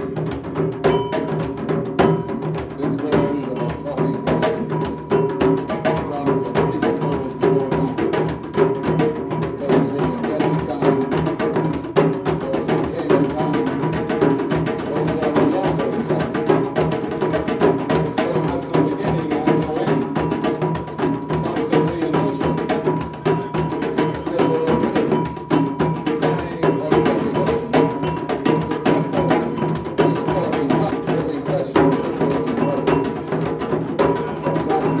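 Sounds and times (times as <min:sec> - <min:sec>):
fast drumming: 0:00.0 - 0:35.0.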